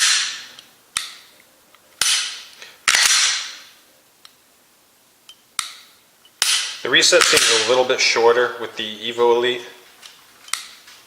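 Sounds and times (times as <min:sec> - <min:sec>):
pistol dry-fire metallic clicks: 0:05.3 - 0:07.7.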